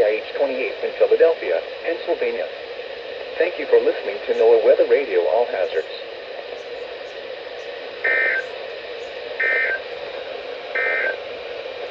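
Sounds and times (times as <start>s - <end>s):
radio hiss: 0.0s - 11.9s
two-tone digital warble bursts: 8.0s - 8.5s, 9.4s - 9.8s, 10.8s - 11.2s.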